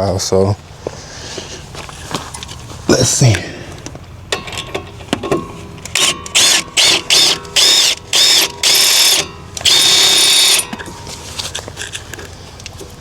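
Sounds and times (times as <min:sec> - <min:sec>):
power tool motor whining: 0:05.9 - 0:10.9.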